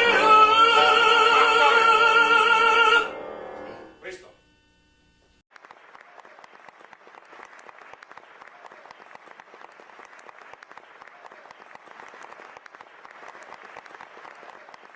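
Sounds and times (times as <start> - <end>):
audience applauding: 5.5 - 14.9.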